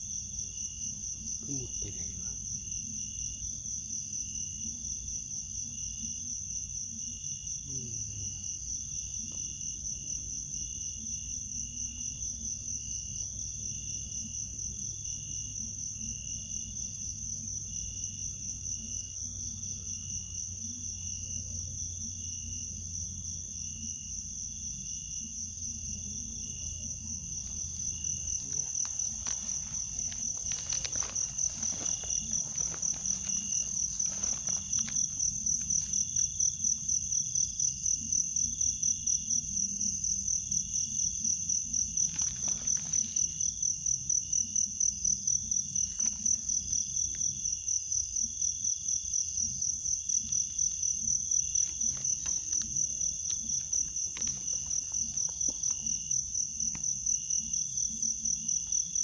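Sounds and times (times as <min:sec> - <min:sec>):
crickets pulsing chirps: 0:00.0 - 0:59.0
insects shrill trill: 0:24.8 - 0:47.6.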